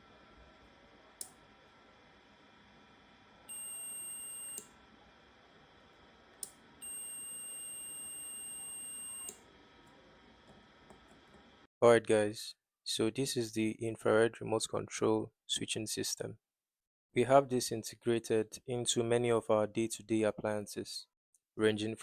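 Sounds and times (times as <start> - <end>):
high electronic beep tones: 3.5 - 4.6, 6.8 - 9.3.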